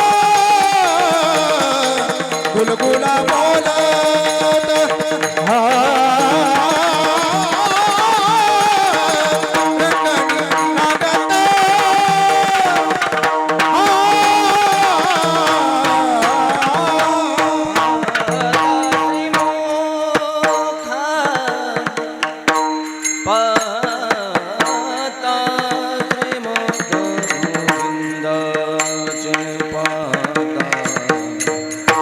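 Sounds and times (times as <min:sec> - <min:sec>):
drum strokes: 0:00.0 - 0:20.7
person singing: 0:00.0 - 0:22.3.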